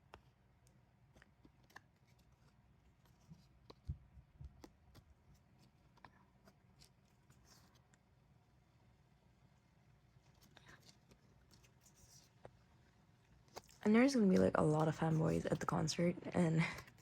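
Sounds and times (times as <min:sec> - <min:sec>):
cards and pages clicking and tapping: 0:00.0 - 0:08.1, 0:10.2 - 0:17.0.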